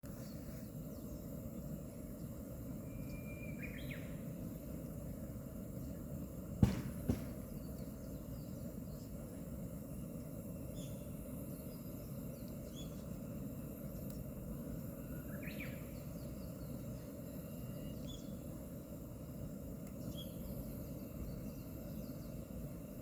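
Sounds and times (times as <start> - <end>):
bird chirps: 2.8 - 4.2
bush warbler calling: 2.8 - 4.2, 11.9 - 13.0, 15.1 - 17.1, 17.7 - 18.4, 20.0 - 20.6.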